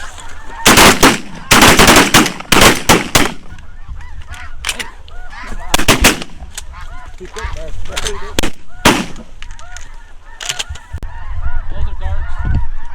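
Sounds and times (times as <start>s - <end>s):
geese honking: 0.0s - 12.9s
shotgun blasts: 0.6s - 3.5s, 5.7s - 6.4s, 8.4s - 9.4s.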